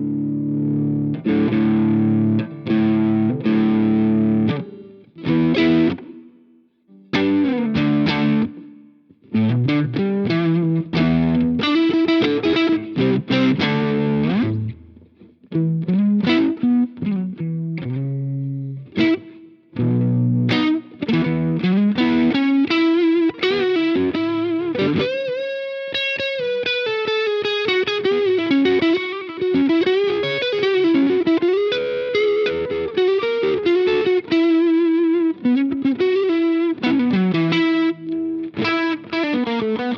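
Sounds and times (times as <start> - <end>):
overdriven electric guitar: 0.0 - 39.9.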